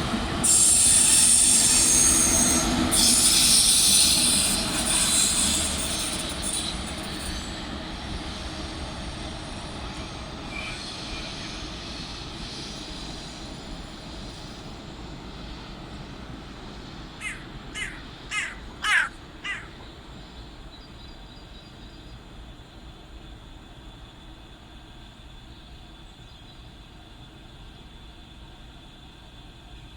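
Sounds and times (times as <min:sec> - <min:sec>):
high-speed train departing: 0:00.0 - 0:29.9
bird calls: 0:17.2 - 0:20.0.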